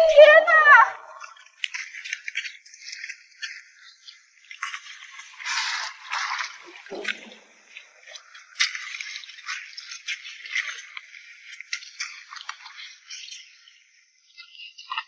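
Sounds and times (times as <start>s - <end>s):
clicks and scrapes: 1.3s - 7.4s.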